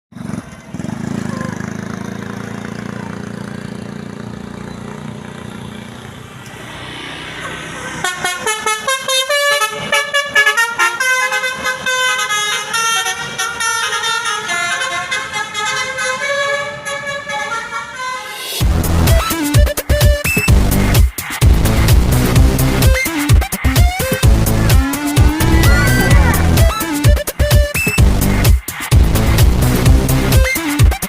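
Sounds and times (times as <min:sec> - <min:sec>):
multi-tone bus horn melody: 0:07.8 - 0:18.6, 0:24.0 - 0:27.5
bus engine running: 0:19.9 - 0:23.0, 0:23.6 - 0:30.4.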